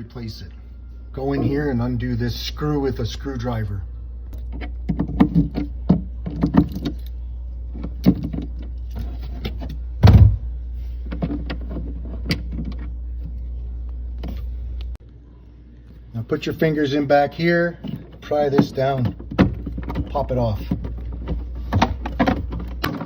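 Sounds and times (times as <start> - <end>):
steady low hum: 0.0 - 23.0
thump: 10.0 - 10.4.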